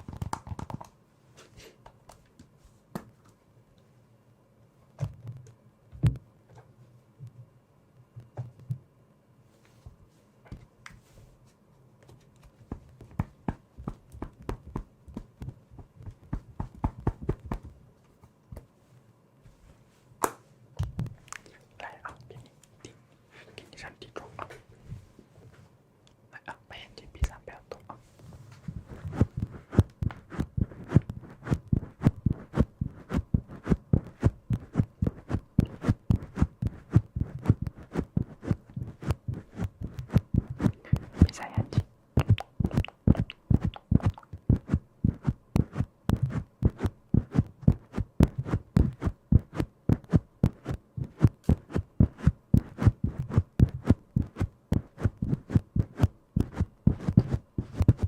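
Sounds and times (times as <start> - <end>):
rapid soft tapping: 12.4 - 17.8, 28.6 - 58.0.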